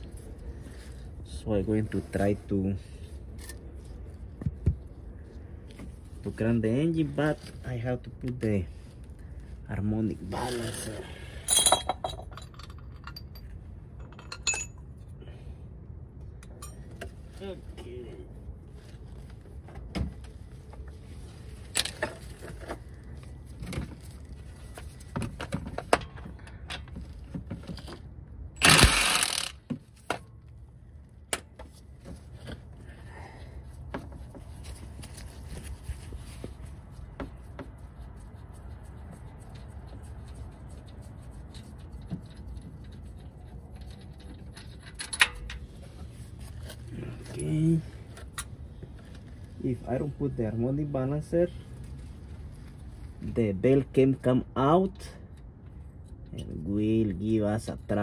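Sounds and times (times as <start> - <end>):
metal tools clicking and knocking: 11.4 - 14.9.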